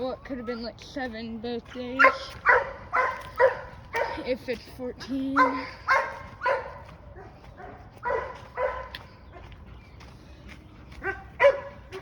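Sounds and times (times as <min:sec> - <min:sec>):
dog barking: 0:02.0 - 0:04.2, 0:05.4 - 0:09.5, 0:11.0 - 0:12.0.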